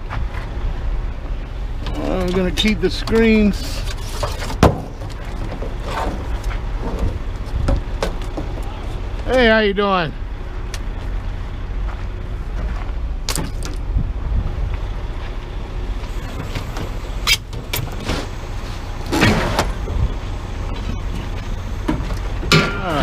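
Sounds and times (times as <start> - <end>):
engine rumbling: 0.0 - 23.0
metal clanks and scrapes: 1.9 - 7.2.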